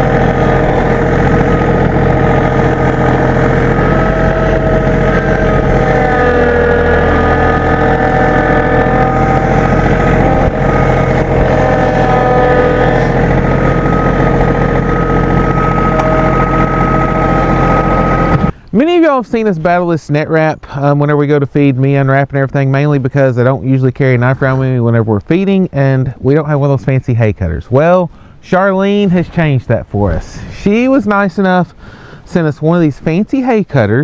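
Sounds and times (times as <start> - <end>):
vehicle engine running: 0.0 - 18.7.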